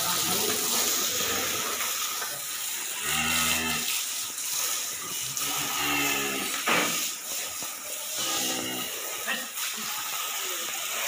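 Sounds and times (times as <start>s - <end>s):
cow mooing: 3.0s - 3.9s, 5.4s - 6.6s.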